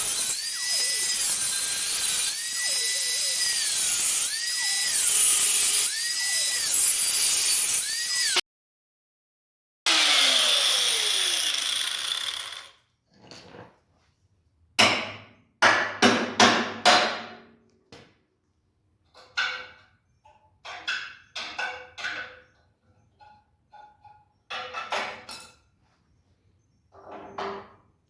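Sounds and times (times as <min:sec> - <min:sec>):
angle grinder winding down: 0:00.0 - 0:08.4, 0:09.9 - 0:12.7.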